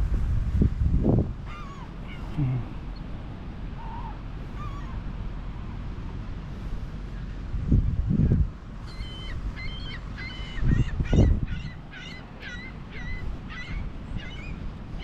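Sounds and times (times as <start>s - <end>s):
wind buffeting microphone: 0.0s - 15.0s
seagull honking cries: 1.4s - 2.4s, 3.8s - 5.0s, 8.9s - 15.0s.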